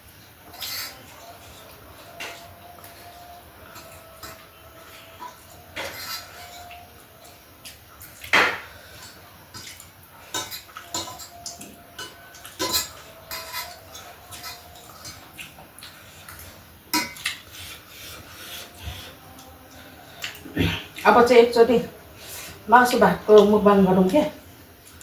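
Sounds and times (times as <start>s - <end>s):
utensils clinking on plates: 0.4s - 19.5s.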